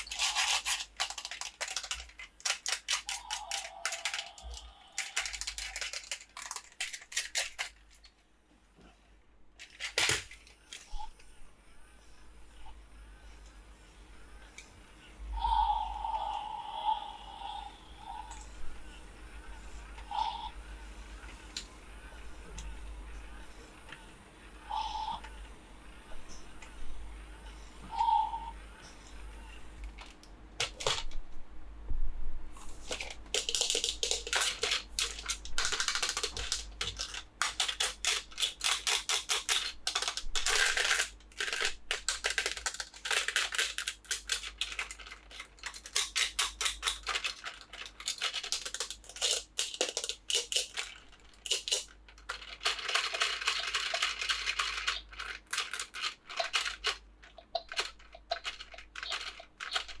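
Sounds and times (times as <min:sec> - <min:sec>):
plastic packaging crinkling: 0:00.0 - 0:08.2, 0:09.6 - 0:10.6, 0:32.6 - 1:00.0.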